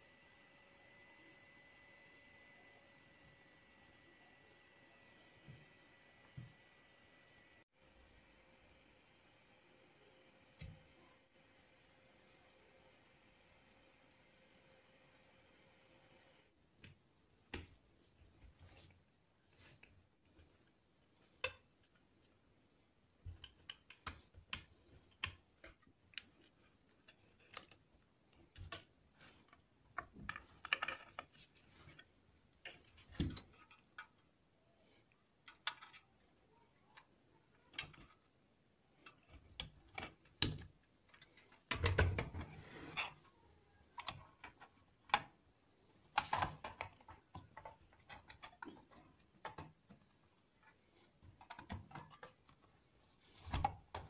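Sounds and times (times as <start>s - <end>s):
tools clicking and tapping: 23.2s - 28.9s.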